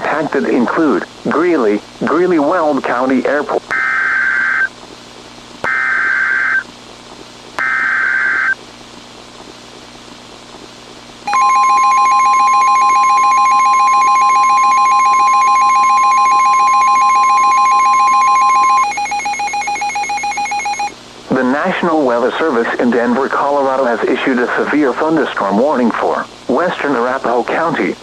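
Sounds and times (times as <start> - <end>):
harsh buzzing data bursts: 3.7 - 4.7, 5.6 - 6.7, 7.6 - 8.6, 11.3 - 21.0
steady alert tone: 11.3 - 20.9.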